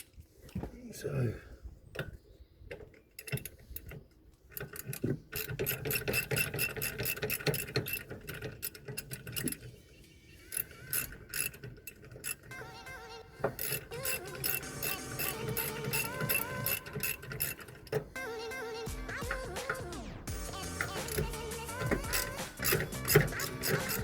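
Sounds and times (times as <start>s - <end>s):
socket ratchet clicking: 3.2s - 9.7s, 10.5s - 12.6s, 13.4s - 18.4s, 19.1s - 24.0s.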